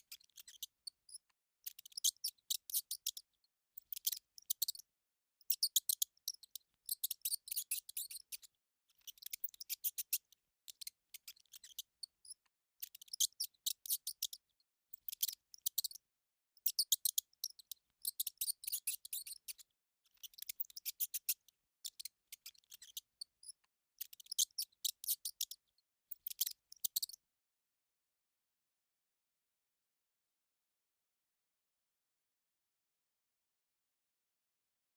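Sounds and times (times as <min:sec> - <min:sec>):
mouse squeaking: 0:00.0 - 0:16.0, 0:16.6 - 0:27.2.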